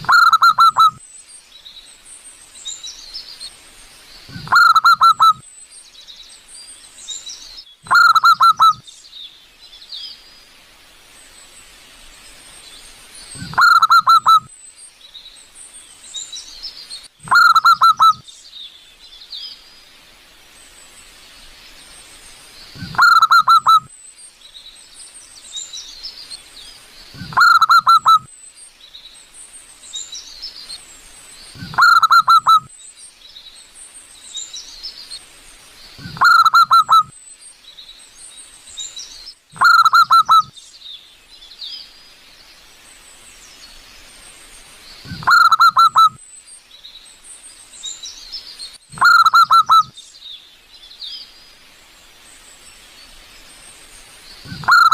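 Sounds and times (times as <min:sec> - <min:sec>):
dove rapid staccato coos: 0:00.0 - 0:01.0, 0:04.3 - 0:05.4, 0:07.9 - 0:08.8, 0:13.4 - 0:14.4, 0:17.2 - 0:18.2, 0:22.8 - 0:23.8, 0:27.2 - 0:28.2, 0:31.6 - 0:32.7, 0:36.0 - 0:37.1, 0:39.6 - 0:40.5, 0:45.1 - 0:46.2, 0:54.5 - 0:54.9
small birds chirping: 0:00.0 - 0:54.9.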